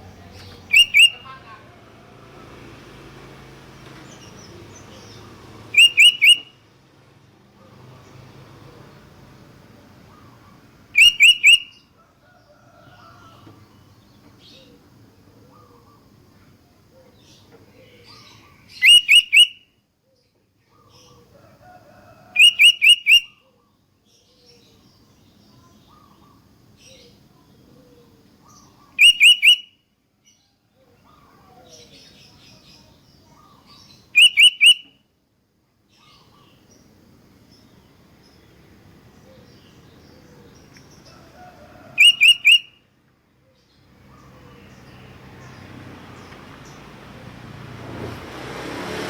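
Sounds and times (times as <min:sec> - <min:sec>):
faint background chirping: 0:00.0 - 0:48.3
bulbul calling: 0:00.1 - 0:01.6, 0:04.1 - 0:06.6, 0:10.0 - 0:11.9, 0:17.0 - 0:19.7, 0:22.4 - 0:23.4, 0:27.9 - 0:29.8, 0:31.0 - 0:35.0, 0:41.8 - 0:45.6.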